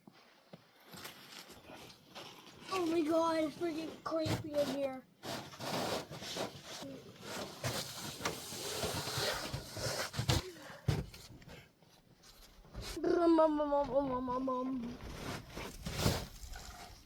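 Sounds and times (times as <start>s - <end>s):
rustling and scraping: 0.8s - 13.0s, 14.2s - 17.0s
knocks of handling things: 7.3s - 11.6s.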